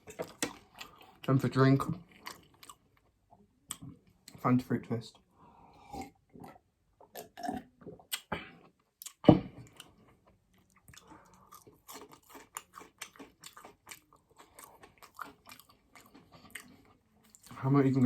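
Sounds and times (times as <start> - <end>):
chewing mouth clicks and smacks: 2.1 - 3.0, 8.1 - 17.6.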